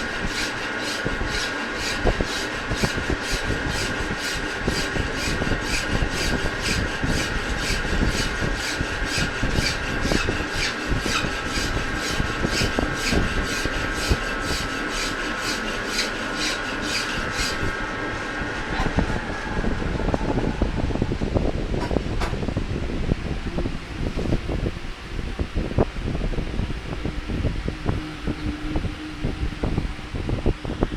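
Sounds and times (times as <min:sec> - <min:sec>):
cutting tool scraping metal: 0:00.0 - 0:17.8
lathe machine whine: 0:00.0 - 0:30.9.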